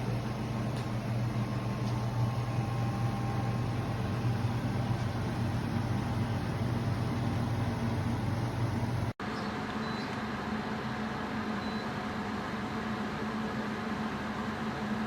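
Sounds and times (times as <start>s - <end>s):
air conditioner hum and fan: 0.0s - 15.0s.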